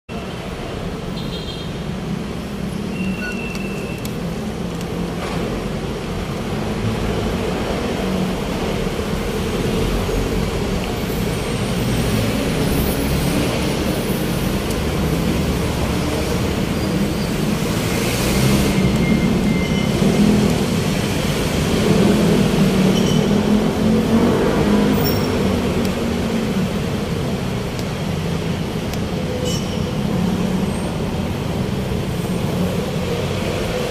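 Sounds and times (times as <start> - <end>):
passing vehicle engines and tyres: 1.8 - 33.9
brief high squeal: 2.9 - 4.0.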